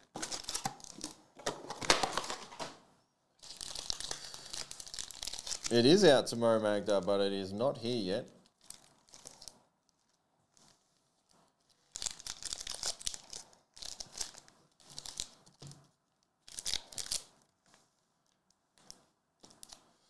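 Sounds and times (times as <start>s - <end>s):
wrappers tearing and crinkling: 0.1s - 1.1s, 3.4s - 6.0s, 8.4s - 9.5s, 11.8s - 15.4s, 16.4s - 17.4s.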